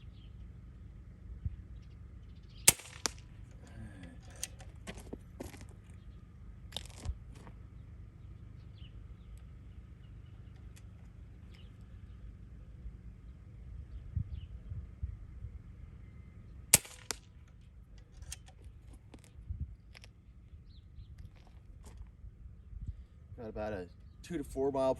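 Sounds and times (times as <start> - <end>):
air rifle shot crack: 2.7 - 4.6, 16.7 - 17.4.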